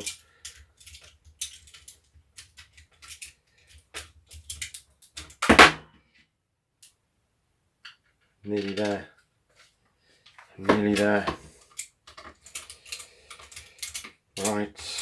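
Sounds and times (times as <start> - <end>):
plastic parts clicking and tapping: 0.0 - 5.6, 7.8 - 9.2, 10.2 - 15.0.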